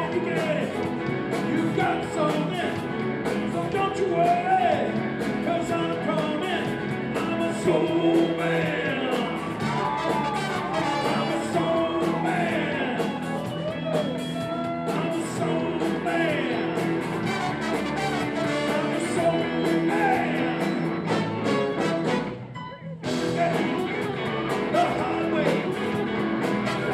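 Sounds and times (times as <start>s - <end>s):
person singing: 0.0s - 0.8s, 3.5s - 17.5s, 18.3s - 20.9s, 23.1s - 26.0s
steady drum beat: 0.0s - 22.2s, 23.1s - 26.9s
live rock band playing: 0.0s - 26.9s.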